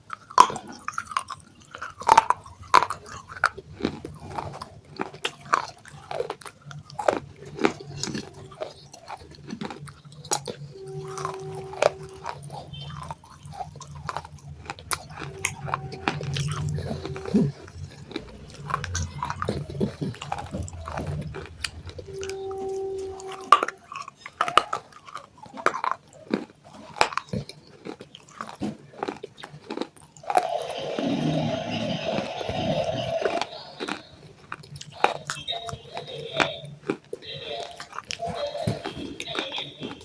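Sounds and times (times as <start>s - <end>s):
chewing and crunching clay: 0.0s - 40.0s
rough grinding noise: 1.8s - 24.2s, 30.0s - 34.8s.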